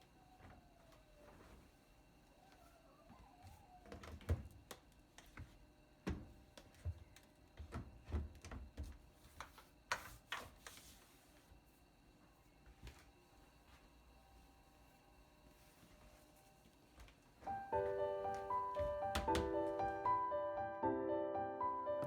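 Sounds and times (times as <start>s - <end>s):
knocks and clicks: 18.8s - 19.9s.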